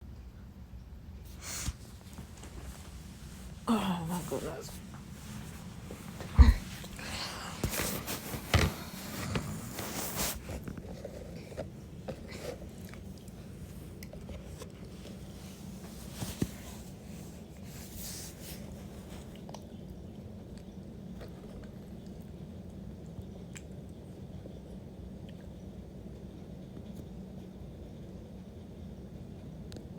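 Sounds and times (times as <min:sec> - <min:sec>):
rustling: 0:01.3 - 0:19.4.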